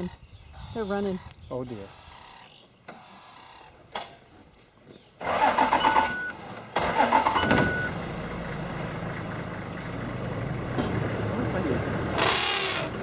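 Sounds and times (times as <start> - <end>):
engine starter cranking: 5.2 - 7.9
engine idling: 5.2 - 13.0.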